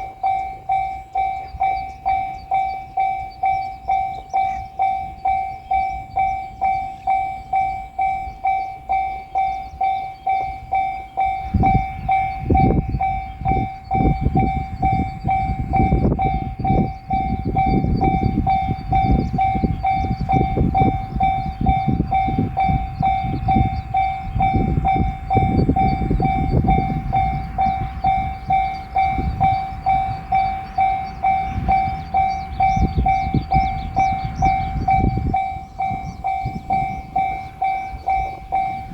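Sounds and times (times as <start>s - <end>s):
level crossing bell ringing: 0.0s - 38.9s
train wheels rumbling and clattering: 9.7s - 38.9s.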